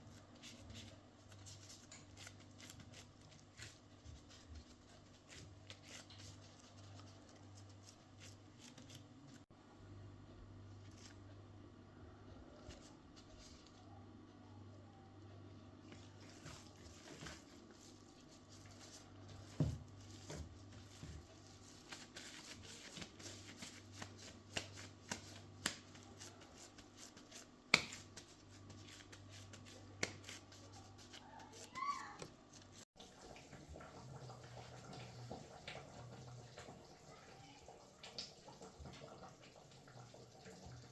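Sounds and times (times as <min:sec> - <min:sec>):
low steady hum: 0:00.0 - 0:31.5.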